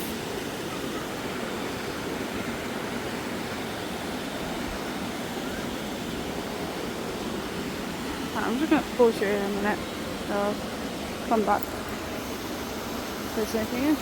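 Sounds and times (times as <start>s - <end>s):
river water rushing over rocks: 0.0s - 14.0s.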